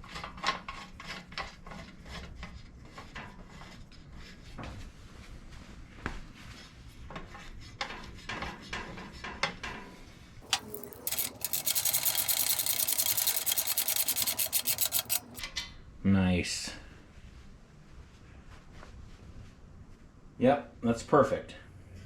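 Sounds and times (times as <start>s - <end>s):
ratchet rasping clicks: 10.4s - 15.4s
clicks and knocks of metal parts: 10.4s - 15.7s.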